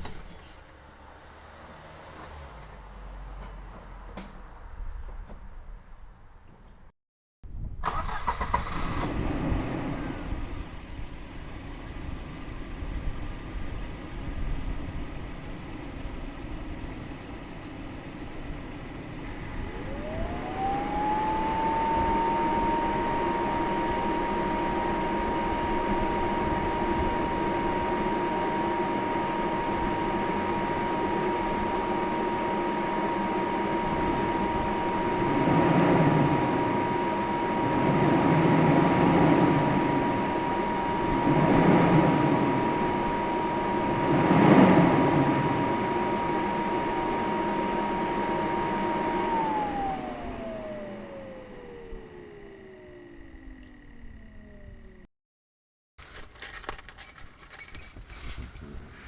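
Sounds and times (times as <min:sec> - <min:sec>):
engine revving: 0:07.8 - 0:10.5, 0:19.5 - 0:54.8
car engine idling: 0:07.9 - 0:49.2
cooling fan whine: 0:09.0 - 0:55.1.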